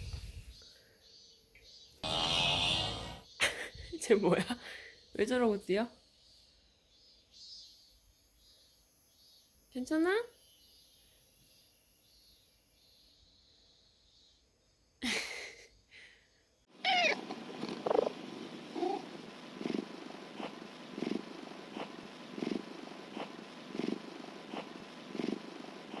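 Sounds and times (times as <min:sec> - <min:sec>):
cat meowing: 0:16.8 - 0:17.2
cat purring: 0:16.9 - 0:26.0.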